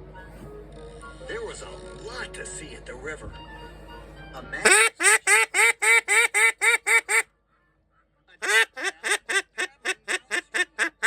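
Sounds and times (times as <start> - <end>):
duck quacking: 4.6 - 7.2, 8.4 - 11.0.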